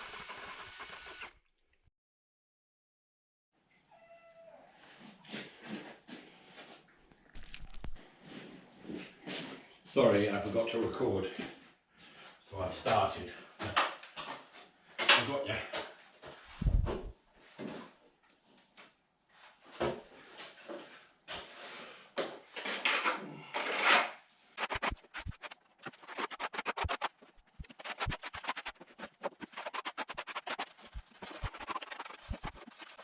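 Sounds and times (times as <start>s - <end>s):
trowel scraping wet plaster: 21.3s - 33.0s.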